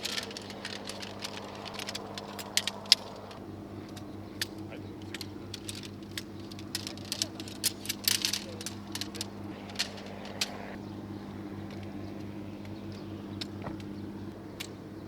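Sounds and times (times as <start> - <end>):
small objects clicking and clinking: 0.0 - 10.8
steady low hum: 0.0 - 15.0.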